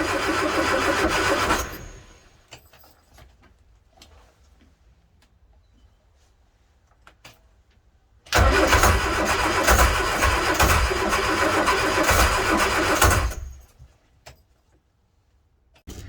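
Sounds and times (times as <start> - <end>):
engine cranking on starter motor: 0.0 - 2.3, 8.3 - 13.7.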